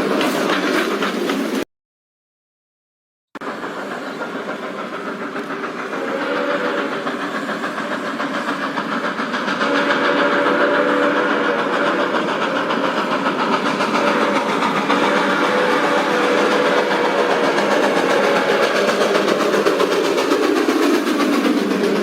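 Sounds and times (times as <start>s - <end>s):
steam locomotive exhaust chuffing: 0.0s - 1.6s, 3.4s - 22.0s
low steam whistle: 3.5s - 20.0s.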